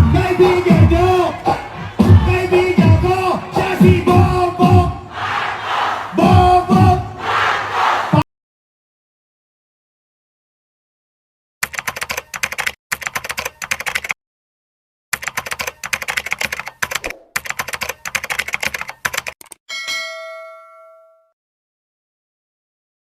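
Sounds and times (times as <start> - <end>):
typewriter keystrokes clacking: 11.6 - 14.2, 15.2 - 19.6
typewriter bell ding: 19.7 - 21.4.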